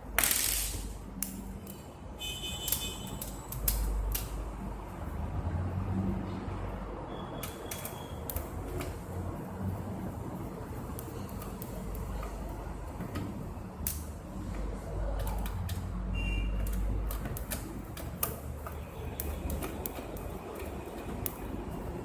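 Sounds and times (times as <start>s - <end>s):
hardware clicking and tapping: 10.9s - 22.0s.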